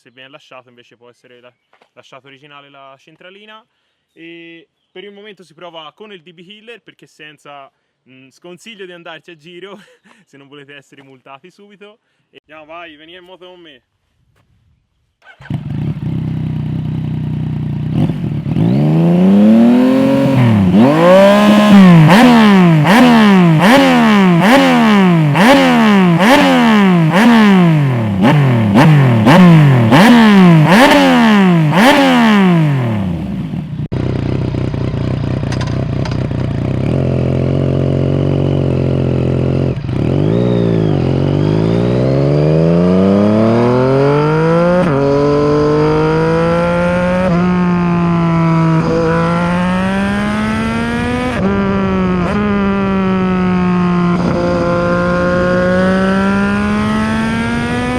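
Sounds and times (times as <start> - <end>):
motorcycle engine idling and revving: 15.2 - 57.9.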